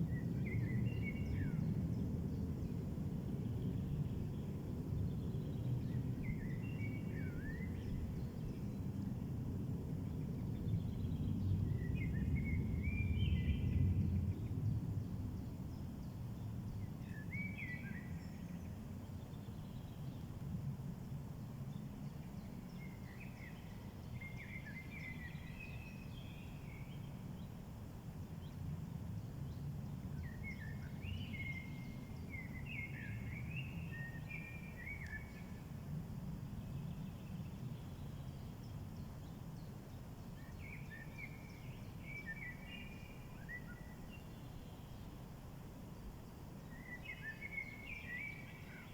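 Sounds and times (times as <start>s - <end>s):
songbird chirping: 30.2s - 35.7s, 36.6s - 45.3s, 46.6s - 48.9s.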